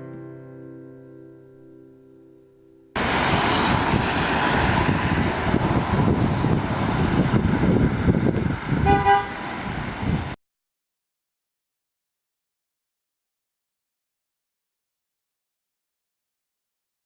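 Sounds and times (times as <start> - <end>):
road traffic on wet street: 3.0 - 10.4
short car horn toot: 8.8 - 9.4.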